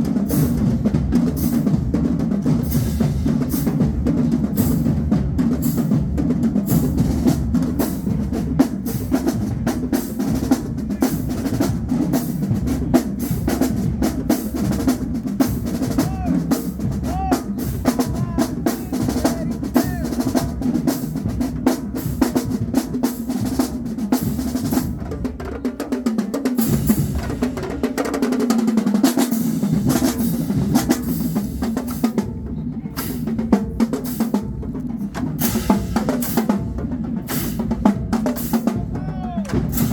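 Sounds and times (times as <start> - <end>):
bass drums pounding: 0.0 - 25.4, 29.7 - 39.9
snare drum strokes: 34.0 - 39.9.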